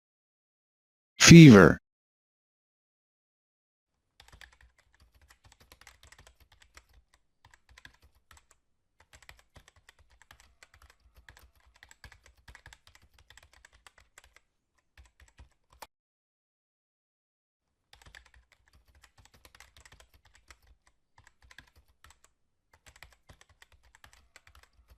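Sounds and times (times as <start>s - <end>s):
typing on a keyboard: 4.2s - 15.9s, 17.9s - 24.9s.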